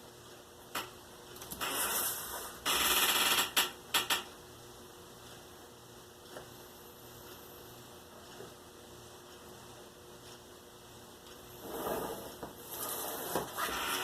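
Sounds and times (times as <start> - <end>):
cardboard scraping: 11.6 - 14.0.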